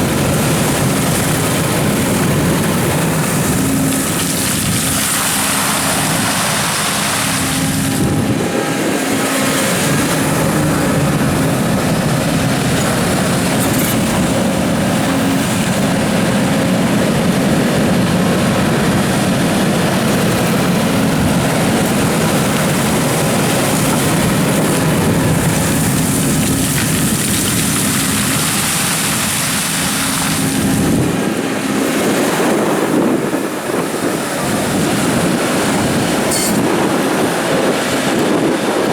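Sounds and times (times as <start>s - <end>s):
excavator diesel engine: 0.0s - 38.9s.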